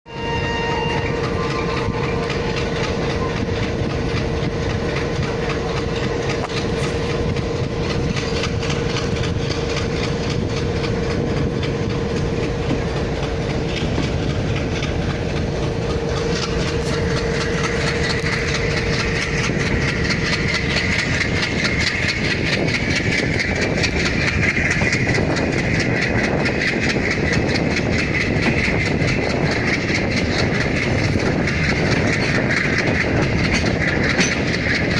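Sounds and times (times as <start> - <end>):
turbocharger whistle: 0.1 - 2.2.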